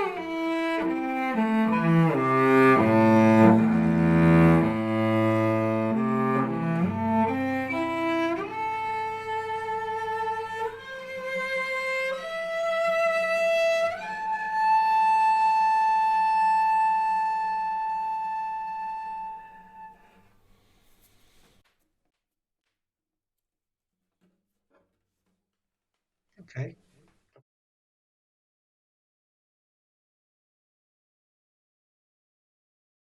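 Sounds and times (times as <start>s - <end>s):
solo cello melody: 0.0s - 20.3s.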